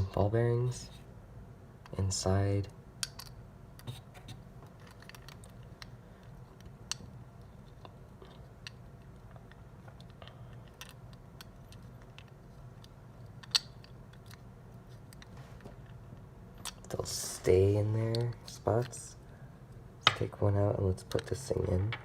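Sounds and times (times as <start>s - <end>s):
faint low hum: 0.0s - 22.0s
metal lock parts clicking: 3.0s - 3.4s, 4.6s - 5.9s, 8.6s - 14.4s.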